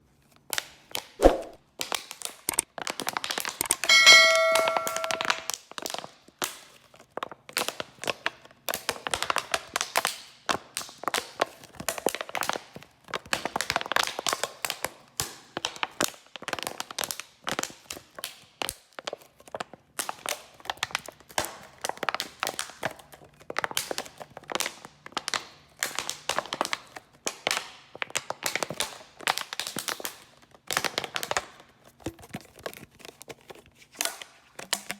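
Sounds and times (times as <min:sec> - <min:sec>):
ringing bottle clink: 0:03.8 - 0:05.5.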